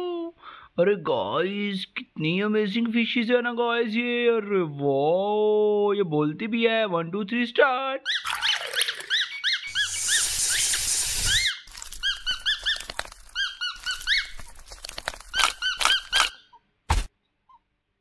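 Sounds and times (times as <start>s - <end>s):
toy squeaking: 8.1s - 16.7s
hissing rush: 9.7s - 11.5s.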